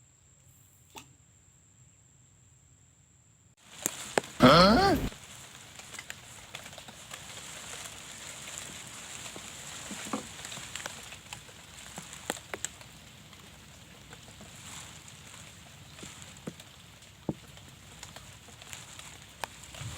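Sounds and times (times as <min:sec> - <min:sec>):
rain falling steadily: 0:03.7 - 0:19.9
raindrops ticking on surfaces: 0:10.4 - 0:19.6.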